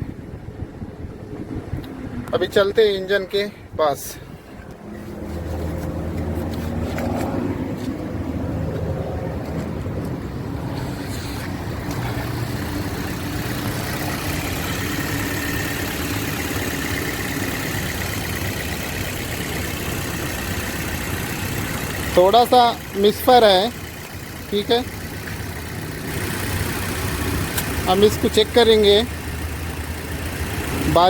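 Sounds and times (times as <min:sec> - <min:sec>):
car engine idling with misfire: 0:09.3 - 0:31.0.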